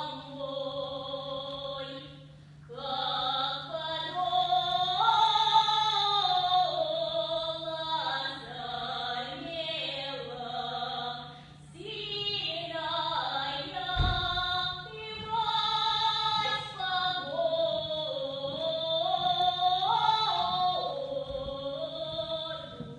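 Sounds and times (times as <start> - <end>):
woman singing folk song: 0.0 - 22.9
low thump: 13.9 - 14.6.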